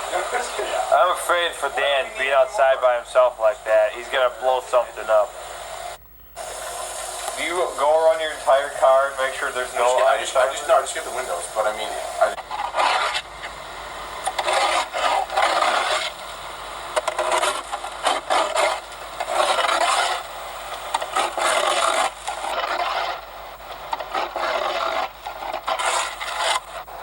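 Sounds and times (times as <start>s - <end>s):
ice scraper rasping ice: 7.4s - 13.3s, 14.2s - 16.2s, 16.9s - 20.2s, 20.9s - 23.2s, 23.9s - 26.7s.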